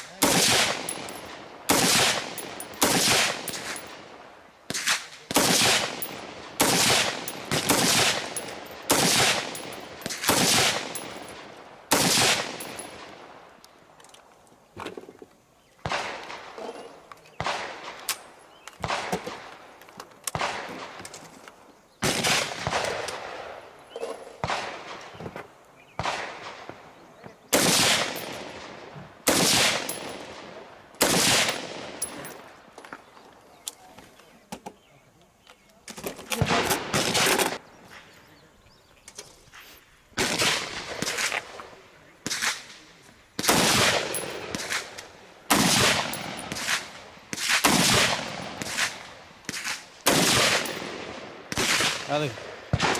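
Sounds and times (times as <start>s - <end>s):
gunshots with echo: 0.0s - 4.1s, 4.7s - 13.2s, 27.5s - 32.4s, 43.4s - 52.9s.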